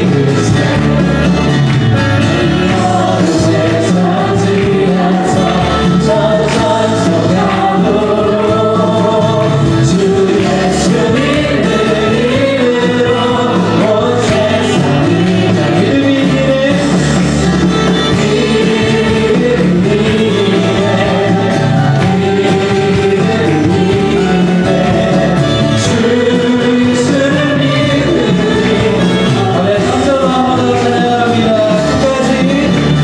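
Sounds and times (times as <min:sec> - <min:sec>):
group of voices singing: 0:00.0 - 0:33.0
instrumental accompaniment: 0:00.0 - 0:33.0.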